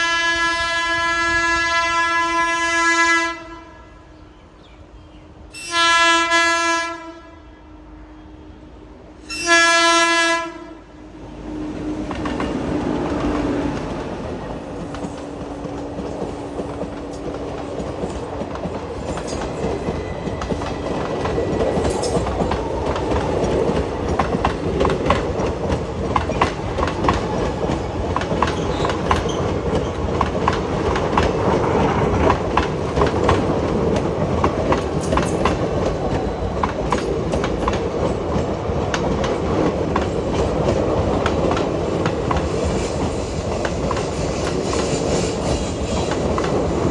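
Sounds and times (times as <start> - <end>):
locomotive horn blasts: 0.0 - 4.1, 5.5 - 11.8
train wheels clattering over rail joints: 12.0 - 46.9.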